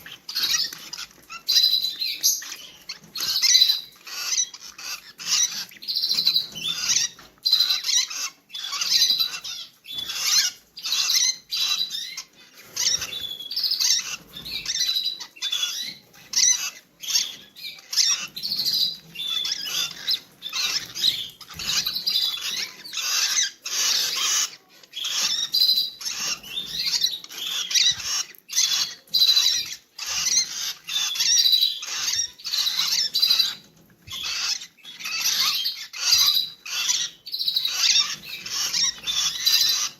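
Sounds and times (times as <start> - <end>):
lovebirds chirping: 0.0 - 39.9.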